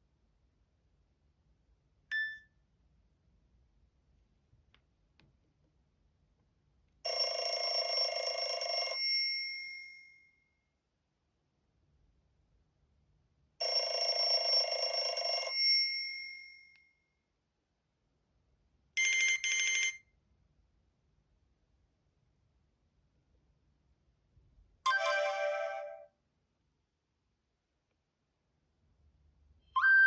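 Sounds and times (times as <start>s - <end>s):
bell-like chime alert tone: 24.9s - 26.1s.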